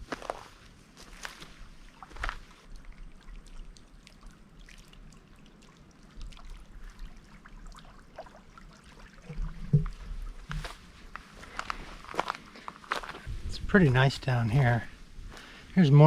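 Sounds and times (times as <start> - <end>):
river water trickling: 0.0 - 13.3
small splashes: 1.1 - 13.1
low thump: 9.3 - 10.8.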